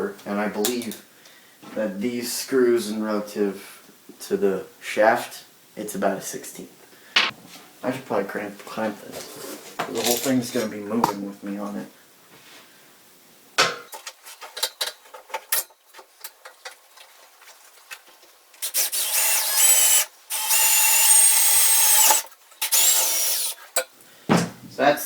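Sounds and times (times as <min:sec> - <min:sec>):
electric drill boring through wood and steel: 0:18.6 - 0:23.6.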